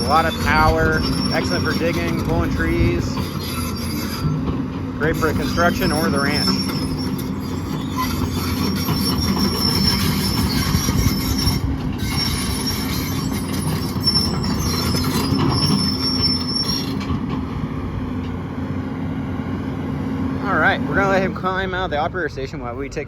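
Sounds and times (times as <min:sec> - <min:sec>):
metallic squealing and clanking: 0:00.0 - 0:17.4
diesel excavator engine: 0:00.0 - 0:23.0.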